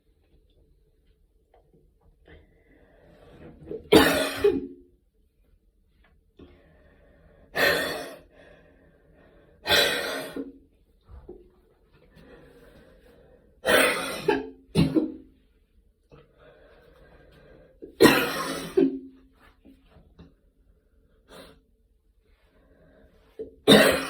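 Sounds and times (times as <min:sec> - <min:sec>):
person coughing: 0:03.9 - 0:04.8, 0:13.6 - 0:15.2, 0:17.9 - 0:19.1, 0:23.6 - 0:24.0.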